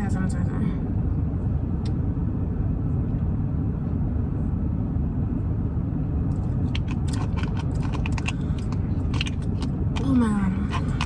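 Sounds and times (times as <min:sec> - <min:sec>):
car cabin rumble: 0:06.2 - 0:11.0
light clicks and rattles: 0:06.3 - 0:11.0.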